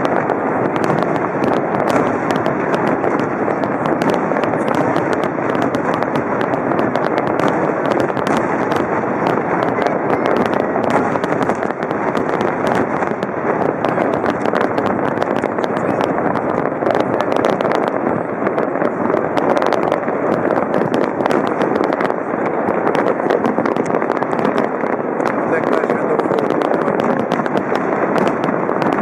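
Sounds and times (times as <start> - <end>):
fireworks cracks and bangs: 0.0 - 29.0.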